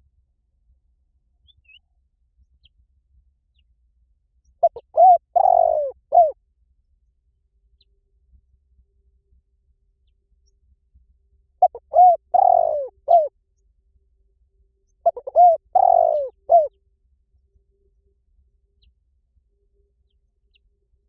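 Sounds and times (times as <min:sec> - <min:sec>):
dove cooing: 0:04.6 - 0:06.4, 0:11.6 - 0:13.3, 0:15.0 - 0:16.7.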